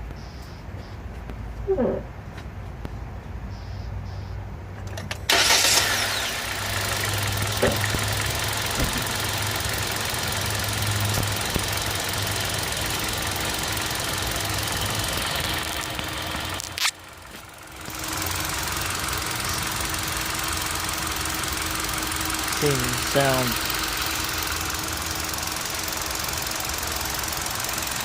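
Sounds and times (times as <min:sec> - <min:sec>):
car engine knocking: 0:06.8 - 0:28.0.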